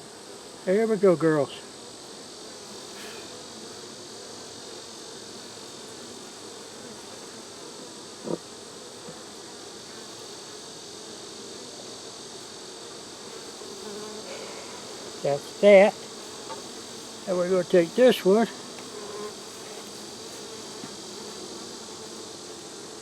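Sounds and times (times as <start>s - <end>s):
high insect chorus: 0.0s - 23.0s
honeybees buzzing: 0.0s - 23.0s.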